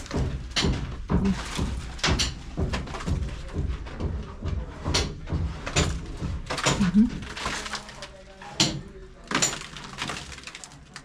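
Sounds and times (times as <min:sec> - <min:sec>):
sharp knocks and thuds: 0:00.0 - 0:07.8.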